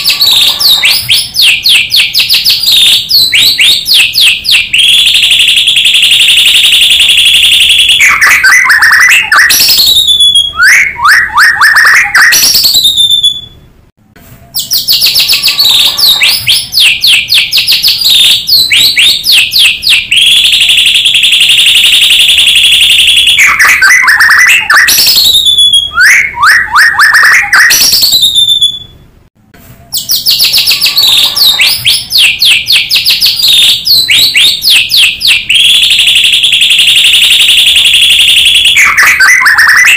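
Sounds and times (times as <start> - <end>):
bird singing whistles and trills: 0.0 - 5.0, 8.0 - 13.6, 14.5 - 20.3, 23.4 - 29.0, 29.9 - 36.0.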